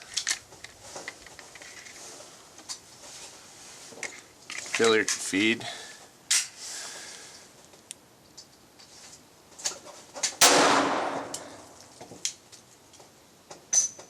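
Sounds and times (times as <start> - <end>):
metallic gun clicks: 10.4 - 11.9
pistol shot with echo: 10.4 - 11.9.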